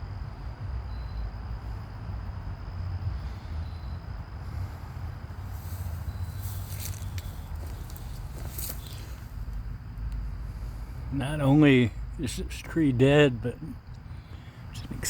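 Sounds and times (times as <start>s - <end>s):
low outdoor rumble: 0.0s - 15.0s
rustling and crackling: 5.5s - 9.7s.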